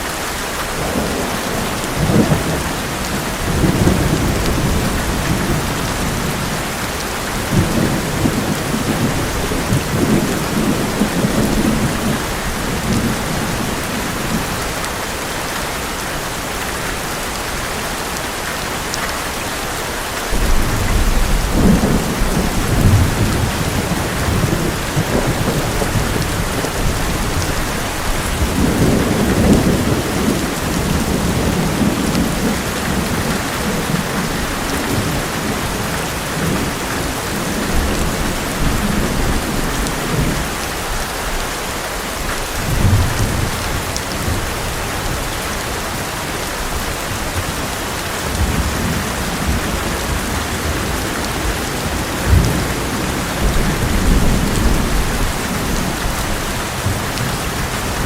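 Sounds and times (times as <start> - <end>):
rain drumming on metal roof: 0.0 - 58.0
thunder rolling: 0.8 - 6.6, 20.3 - 40.5.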